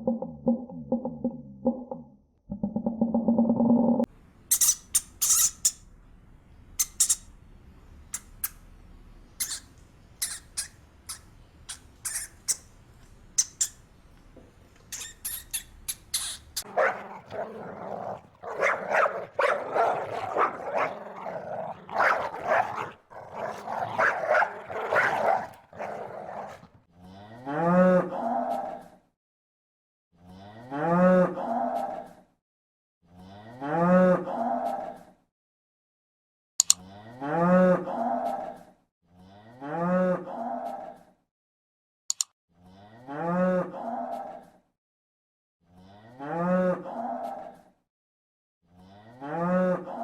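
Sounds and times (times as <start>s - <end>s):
cow mooing: 16.7s - 26.7s.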